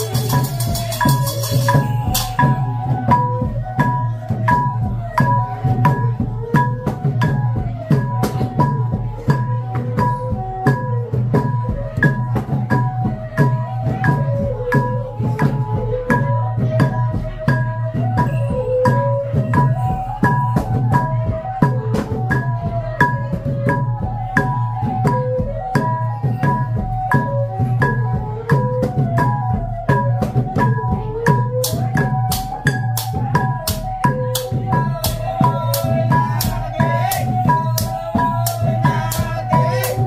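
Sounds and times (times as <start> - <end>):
wavering melody line: 0.0 - 7.0, 30.9 - 40.0
drums and small cymbals beating: 0.0 - 40.0.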